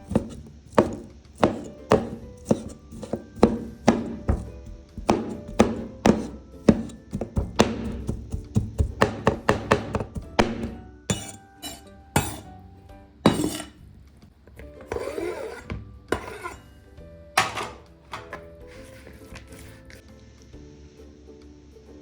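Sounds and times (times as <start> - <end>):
knife chopping on cutting board: 0.0 - 12.5, 13.3 - 13.8
background music: 0.0 - 22.0
utensils and dishes clinking: 10.6 - 12.5, 13.3 - 13.8, 14.6 - 16.8, 17.4 - 20.0.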